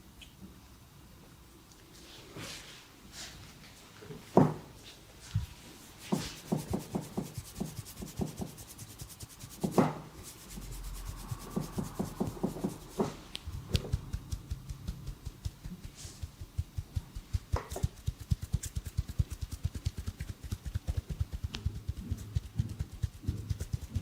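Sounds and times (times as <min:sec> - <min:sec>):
hands rubbing skin: 0:05.4 - 0:24.0
quick rhythmic pats on skin: 0:06.0 - 0:24.0.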